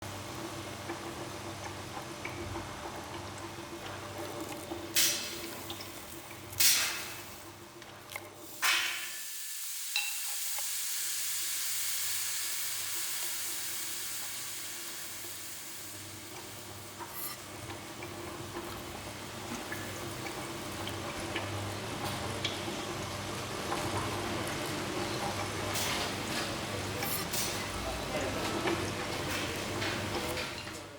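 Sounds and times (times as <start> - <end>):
appliance hum: 0.0 - 9.2, 9.9 - 30.9.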